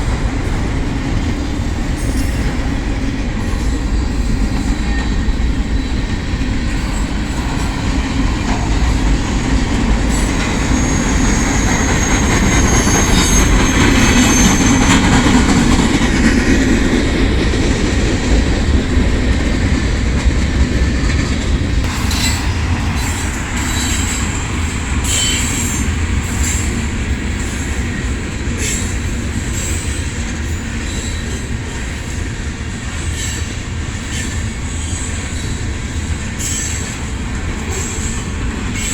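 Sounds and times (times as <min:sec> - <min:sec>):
train wheels rumbling on rail: 0:00.0 - 0:38.9
high wheel squeal: 0:03.4 - 0:15.4, 0:21.9 - 0:30.2, 0:33.1 - 0:38.9.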